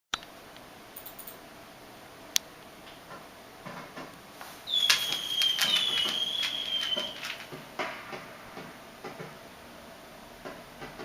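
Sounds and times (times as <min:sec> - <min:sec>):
steady high whistle: 0:04.7 - 0:07.6
firecracker cracks: 0:04.7 - 0:08.2.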